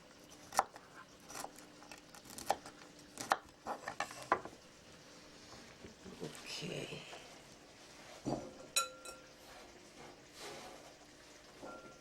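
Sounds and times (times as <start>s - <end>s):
knife cutting cauliflower: 0.3s - 4.4s.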